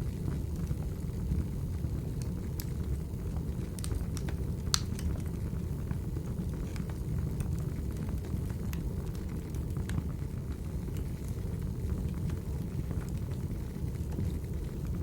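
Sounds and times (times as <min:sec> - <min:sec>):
fire crackles and pops: 0:00.0 - 0:15.0
fire rumbling in a fireplace: 0:00.0 - 0:15.0.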